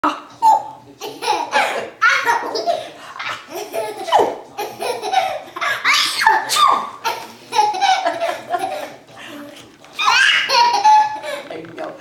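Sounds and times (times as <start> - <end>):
toddler laughing: 0.3 - 9.0, 10.0 - 11.4
people laughing: 0.4 - 11.5
toddler fake sneezes: 5.9 - 7.0.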